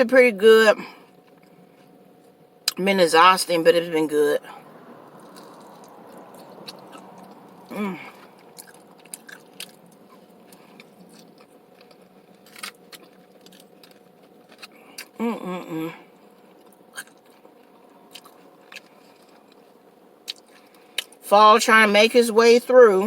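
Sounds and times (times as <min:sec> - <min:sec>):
chewing and crunching chips: 0:01.0 - 0:02.8, 0:04.4 - 0:21.3
person humming: 0:07.7 - 0:08.2, 0:15.2 - 0:16.0.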